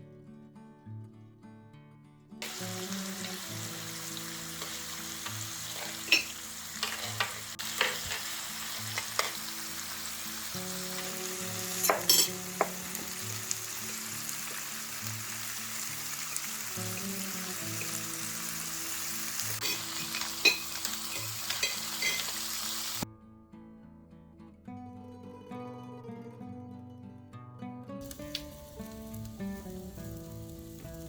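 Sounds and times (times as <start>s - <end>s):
background music: 0.0s - 27.3s, 28.0s - 31.0s
fireplace sizzling and crackling: 2.4s - 23.0s, 28.0s - 31.0s.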